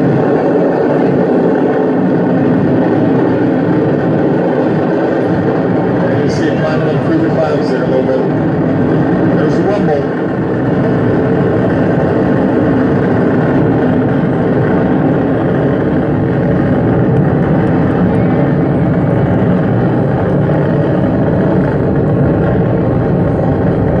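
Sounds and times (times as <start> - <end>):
distant rocket engine rumble: 0.0 - 24.0.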